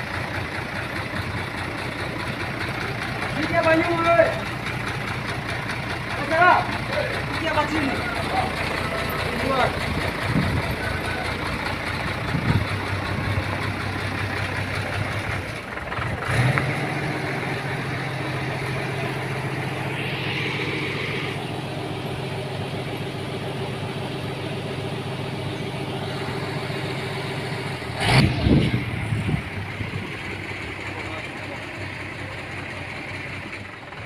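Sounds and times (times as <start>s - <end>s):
vehicle engine idling: 0.0s - 34.0s.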